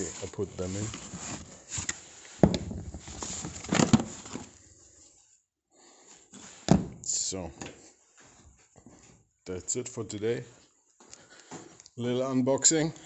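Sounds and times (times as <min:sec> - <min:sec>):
plastic tool box moved: 0:00.0 - 0:04.6.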